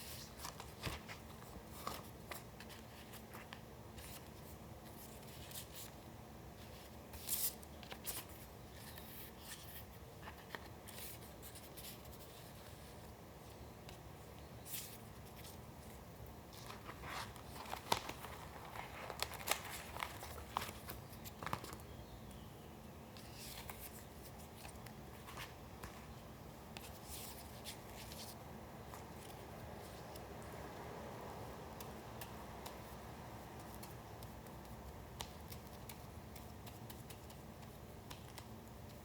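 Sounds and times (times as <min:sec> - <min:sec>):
paper rustling and crinkling: 0:00.0 - 0:06.0, 0:14.6 - 0:21.9
faint room noise: 0:00.0 - 0:39.0.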